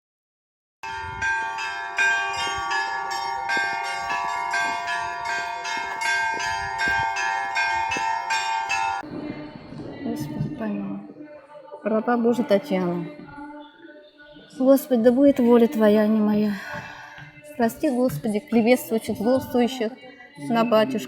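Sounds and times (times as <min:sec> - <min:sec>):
large bells humming: 0:00.8 - 0:09.0
small church bells ringing: 0:00.8 - 0:09.0.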